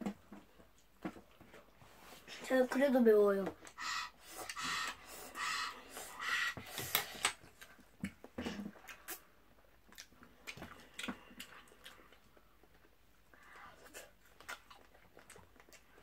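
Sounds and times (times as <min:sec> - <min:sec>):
chewing and mouth smacks: 0:06.7 - 0:16.0.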